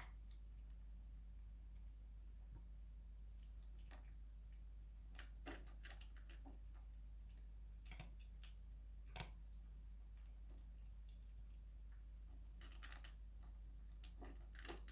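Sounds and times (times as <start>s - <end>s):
low steady hum: 0.0s - 14.9s
cat crunching food: 13.9s - 14.9s.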